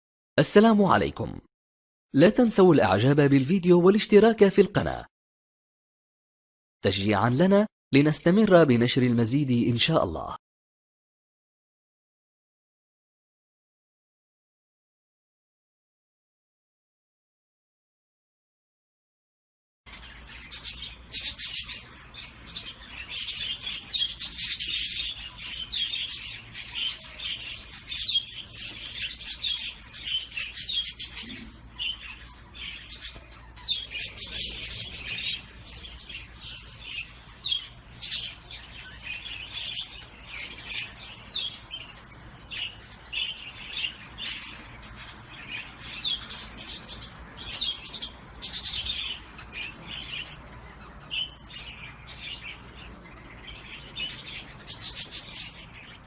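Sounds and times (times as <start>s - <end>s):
cage birds chirping: 19.9s - 56.0s.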